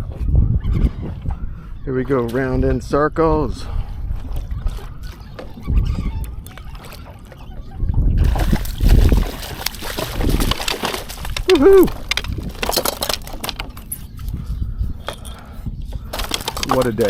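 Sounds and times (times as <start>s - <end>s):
water splashing and sloshing: 3.8s - 14.4s, 15.9s - 17.0s
person shouting woohoo: 11.5s - 12.0s.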